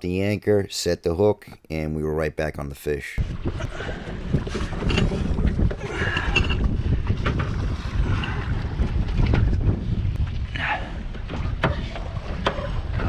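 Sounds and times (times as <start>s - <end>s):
water around boat: 3.2s - 13.0s
wind buffeting microphone: 3.2s - 13.0s.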